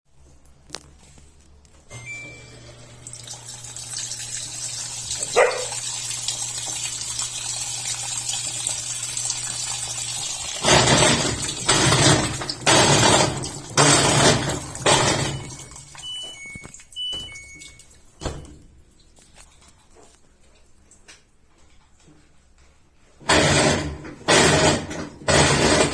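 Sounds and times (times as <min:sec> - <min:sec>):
washing machine humming: 0:01.9 - 0:20.8, 0:23.2 - 0:25.9
short electronic beeps: 0:15.4 - 0:17.9.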